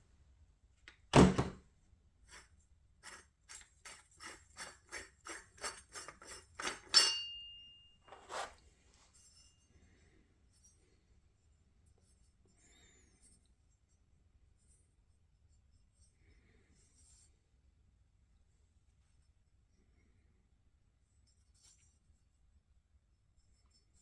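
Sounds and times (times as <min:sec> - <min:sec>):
ringing metallic clank: 0:06.6 - 0:07.9.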